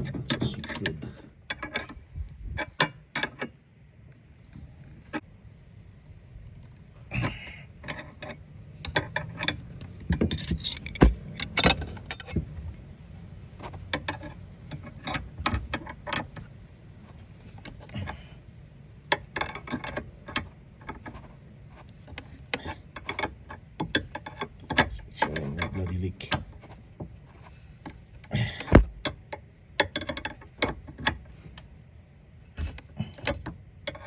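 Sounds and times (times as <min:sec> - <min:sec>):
metal tools clicking and rattling: 0:07.9 - 0:12.4.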